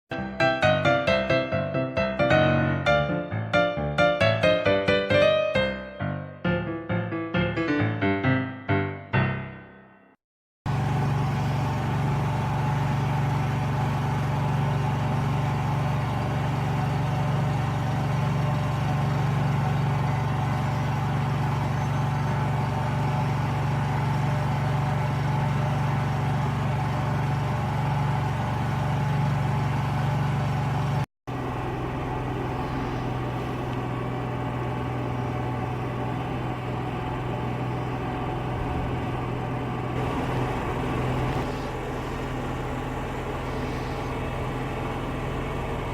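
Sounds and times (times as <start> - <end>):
car running with low hum: 10.7 - 45.9.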